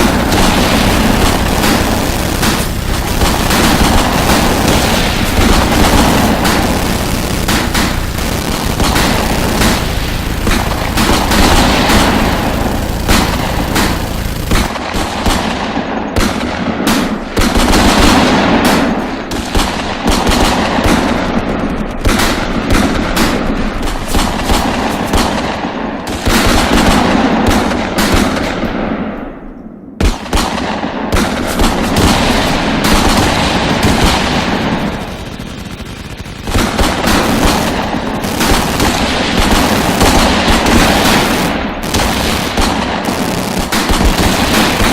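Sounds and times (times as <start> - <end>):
single gunshots: 0.0 - 21.4, 30.0 - 44.9
machine-gun fire: 0.0 - 29.2, 30.0 - 44.9.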